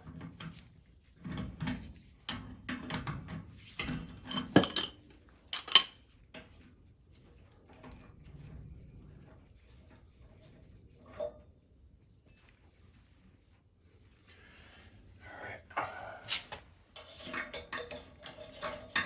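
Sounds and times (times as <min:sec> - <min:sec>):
metal tools clinking and knocking: 0:01.2 - 0:06.7, 0:16.9 - 0:19.0.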